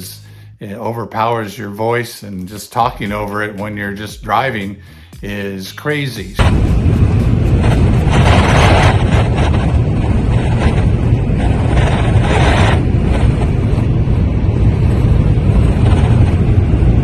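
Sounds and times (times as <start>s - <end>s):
wind noise inside van cab: 6.4s - 17.0s.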